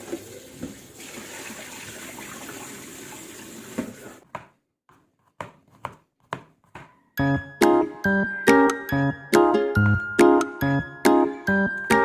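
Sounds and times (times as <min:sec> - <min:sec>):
tap water running into sink: 0:00.0 - 0:04.2.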